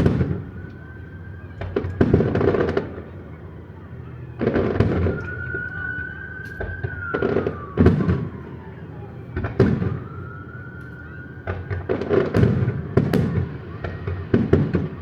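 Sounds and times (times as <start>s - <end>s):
firework booms with crackle: 0.0s - 0.7s, 1.6s - 3.2s, 4.4s - 15.0s
falling firework whistle: 4.4s - 8.7s, 9.4s - 15.0s.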